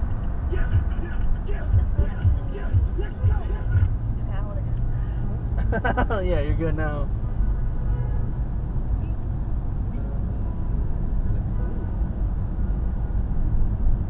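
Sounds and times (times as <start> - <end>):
car road and engine rumble: 0.0 - 14.0.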